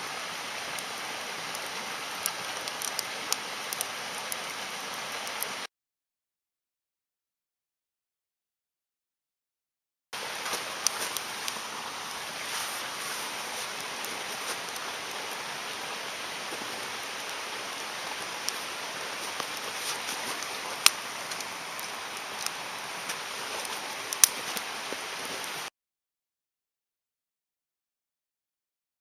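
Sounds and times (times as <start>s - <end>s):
campfire hissing: 0.0s - 5.7s, 10.2s - 25.7s
fire crackling and popping: 0.1s - 5.5s, 10.2s - 25.7s.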